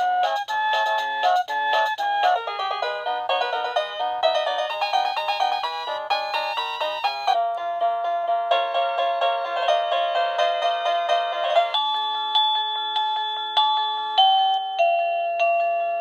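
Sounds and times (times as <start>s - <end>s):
electronic doorbell chime melody: 0.0s - 16.0s.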